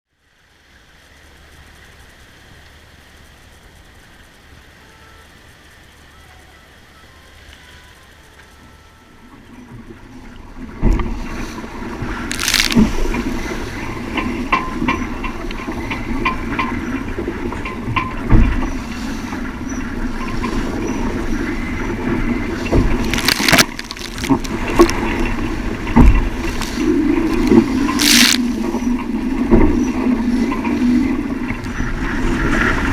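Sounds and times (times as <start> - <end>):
water washing against a hull: 8.6 - 32.9
strong wind: 9.3 - 32.9
sea rushing: 9.4 - 14.9, 18.3 - 32.9
water splash: 12.3 - 13.1, 23.0 - 25.0, 26.4 - 28.7.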